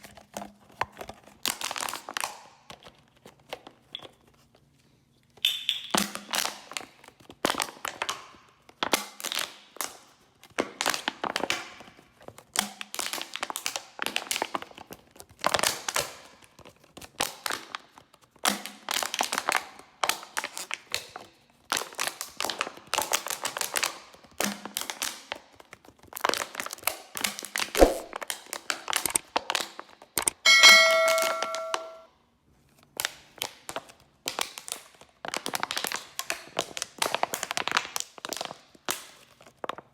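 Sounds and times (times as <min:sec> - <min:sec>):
bottle ringing ding: 0:30.4 - 0:32.0.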